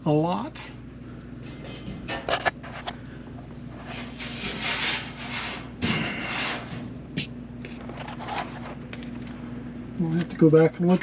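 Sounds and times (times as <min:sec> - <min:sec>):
steady low hum: 0:00.0 - 0:11.0
rubbing and scraping: 0:03.7 - 0:06.9.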